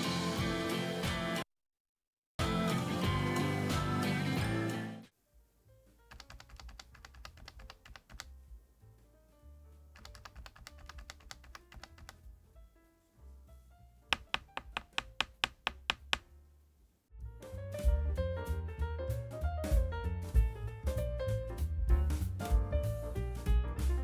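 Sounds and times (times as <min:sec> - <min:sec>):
soft music: 0:02.4 - 0:05.1, 0:17.2 - 0:24.0
mechanical keyboard typing: 0:06.1 - 0:08.4, 0:10.0 - 0:12.2, 0:14.2 - 0:16.3.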